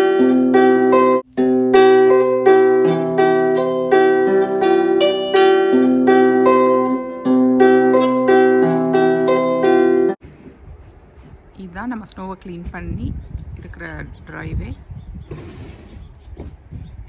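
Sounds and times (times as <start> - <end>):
plucked harp-like music: 0.0 - 10.2.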